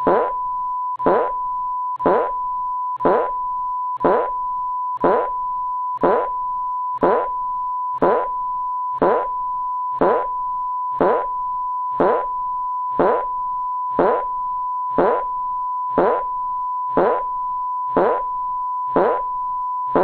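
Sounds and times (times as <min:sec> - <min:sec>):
fart sound effect: 0:00.0 - 0:00.4, 0:01.0 - 0:01.4, 0:02.0 - 0:02.4, 0:03.0 - 0:03.4, 0:04.0 - 0:04.4, 0:05.0 - 0:05.4, 0:06.0 - 0:06.4, 0:07.0 - 0:07.4, 0:08.0 - 0:08.4, 0:09.0 - 0:09.4, 0:10.0 - 0:10.4, 0:11.0 - 0:14.3, 0:14.9 - 0:15.3, 0:15.9 - 0:17.3, 0:17.9 - 0:18.3, 0:18.9 - 0:20.0
censor beep tone: 0:00.0 - 0:20.0.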